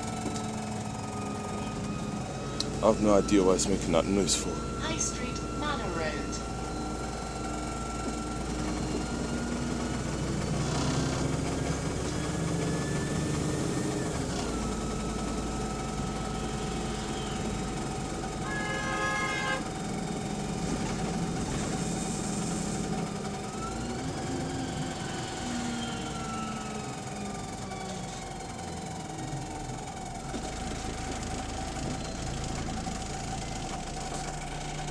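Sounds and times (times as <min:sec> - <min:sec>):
bus engine drone: 0:00.0 - 0:34.9
bus gearbox whine: 0:00.0 - 0:34.9
short electronic tone: 0:18.4 - 0:19.7.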